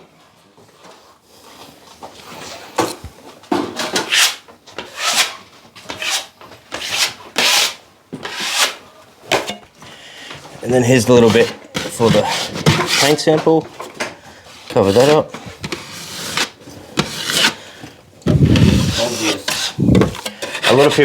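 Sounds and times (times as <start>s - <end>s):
hand tool scraping drywall: 3.8s - 8.8s, 11.0s - 13.4s, 14.5s - 21.0s.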